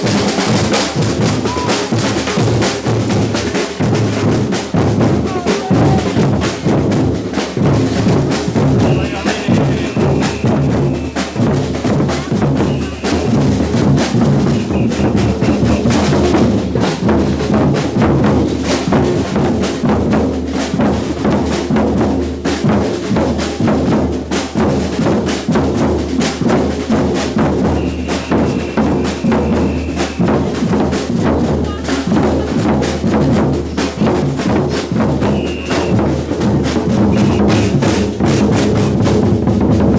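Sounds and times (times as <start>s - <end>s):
samba percussion ensemble: 0.0s - 39.9s
whistle blasts: 8.8s - 11.5s, 12.5s - 13.6s, 14.4s - 16.2s, 27.6s - 30.6s, 35.2s - 36.2s, 37.1s - 37.9s.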